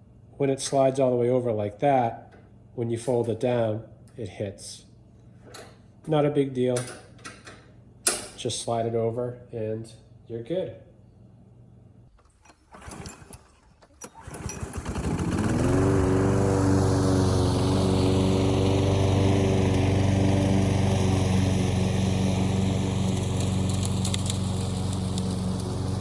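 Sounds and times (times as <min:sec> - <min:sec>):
lawn mower engine starting and running: 0:12.1 - 0:26.0.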